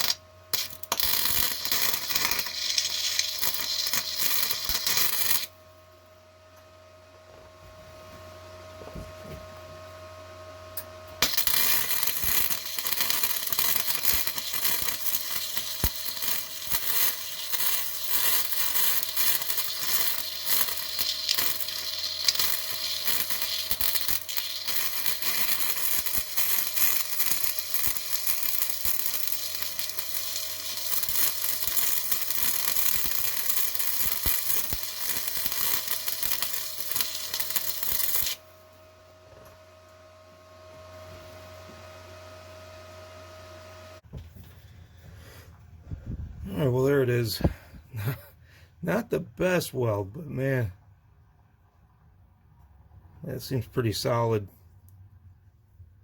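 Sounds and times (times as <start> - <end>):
arc welding crackling sizzle: 0.0 - 5.8, 10.8 - 40.0, 53.3 - 54.5
welder hum: 0.0 - 5.9, 10.7 - 45.1, 53.2 - 54.5.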